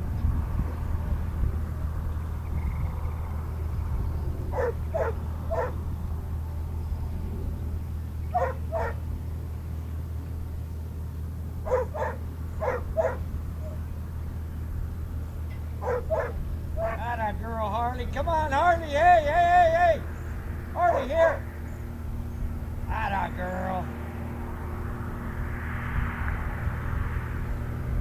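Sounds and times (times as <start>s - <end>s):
steady low hum: 0.0s - 28.0s
dog barking: 4.5s - 5.8s, 8.3s - 9.0s, 11.6s - 14.0s, 15.8s - 17.0s, 20.8s - 21.5s.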